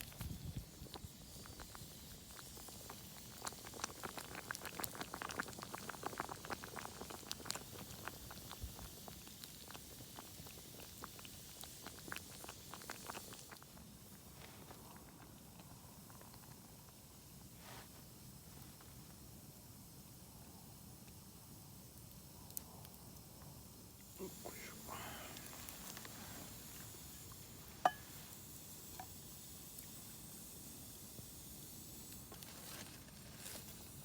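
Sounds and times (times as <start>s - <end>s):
campfire pops and crackles: 0.0s - 19.7s, 21.0s - 34.0s.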